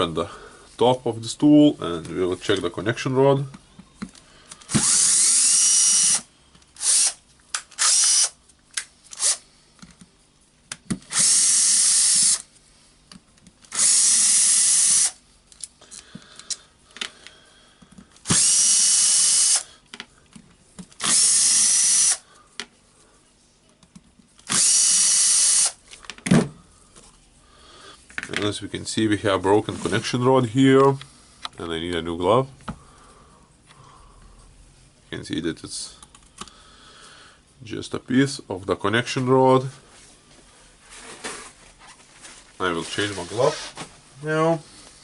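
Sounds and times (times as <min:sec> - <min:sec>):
power drill whining: 0:04.7 - 0:07.2, 0:07.8 - 0:08.4, 0:11.1 - 0:12.4, 0:13.7 - 0:15.2, 0:18.3 - 0:19.7, 0:21.0 - 0:22.2, 0:24.5 - 0:25.8.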